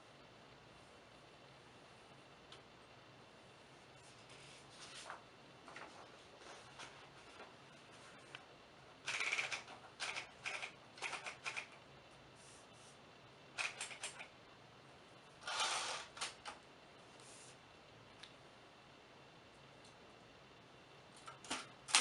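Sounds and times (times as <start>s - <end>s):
typewriter keys striking: 9.1s - 11.7s, 13.6s - 14.3s.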